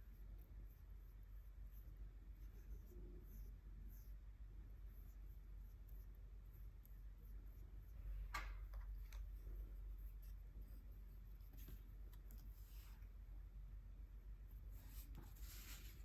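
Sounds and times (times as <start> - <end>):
low room hum: 0.0 - 16.0
scratchy strokes on paper: 9.4 - 13.2, 14.5 - 16.0.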